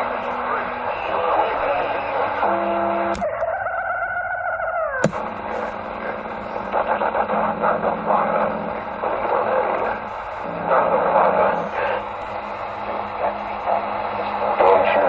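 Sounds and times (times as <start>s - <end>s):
crackly radio static: 0.0s - 3.7s, 5.0s - 15.0s
steady low hum: 5.0s - 15.0s.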